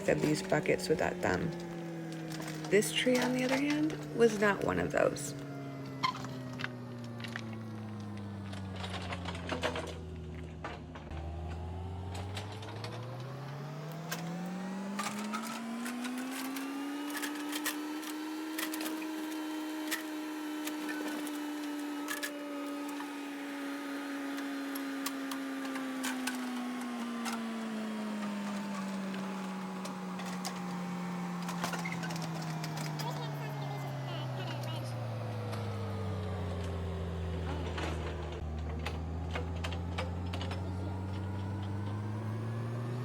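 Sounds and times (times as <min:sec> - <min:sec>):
excavator diesel engine revving: 0:00.0 - 0:43.0
sharp cracks and knocks: 0:05.8 - 0:23.1.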